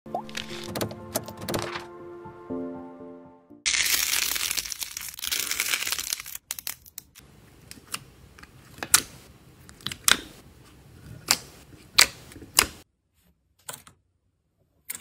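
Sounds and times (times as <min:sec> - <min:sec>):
slime crackling and popping: 0:03.7 - 0:07.2.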